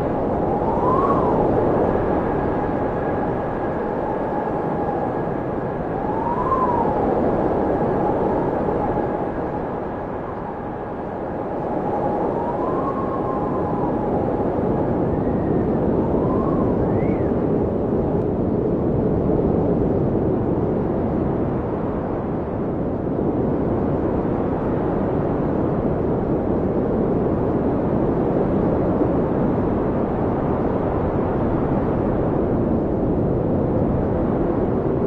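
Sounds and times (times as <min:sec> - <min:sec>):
blizzard wind roaring: 0:00.0 - 0:35.0
whistling wind howls: 0:00.0 - 0:35.0.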